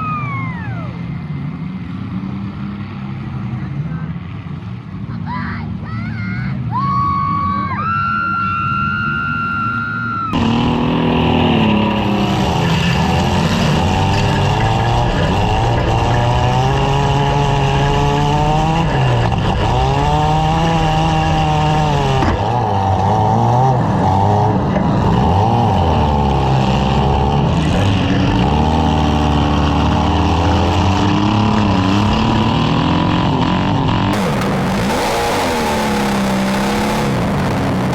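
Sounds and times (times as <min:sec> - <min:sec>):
car engines revving: 0:00.9 - 0:05.2, 0:10.3 - 0:37.9
steady high tone: 0:34.2 - 0:37.9.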